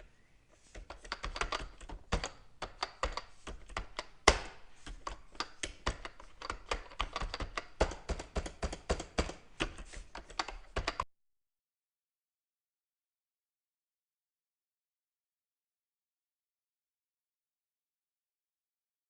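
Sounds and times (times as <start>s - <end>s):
keyboard typing clicks: 0.7s - 11.1s.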